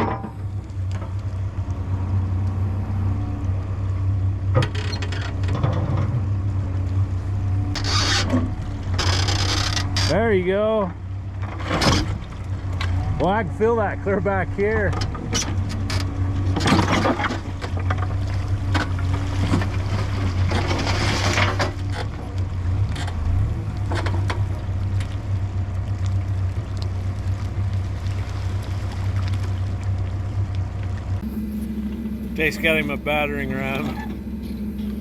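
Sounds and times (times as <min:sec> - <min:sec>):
diesel engine running: 0:00.0 - 0:35.0
knocks and scraping: 0:31.2 - 0:35.0.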